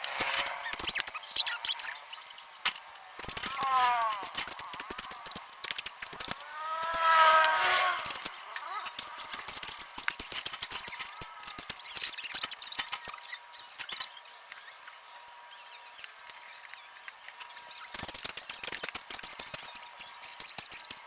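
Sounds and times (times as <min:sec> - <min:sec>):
harsh high-pitched metal scraping: 0:02.8 - 0:13.3
hand tool clicks and taps on metal: 0:04.2 - 0:07.1, 0:08.9 - 0:12.5, 0:18.0 - 0:21.0.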